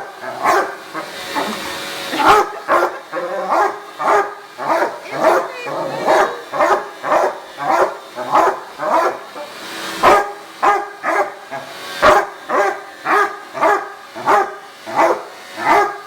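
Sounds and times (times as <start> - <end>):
dog barking: 0.3 - 16.0.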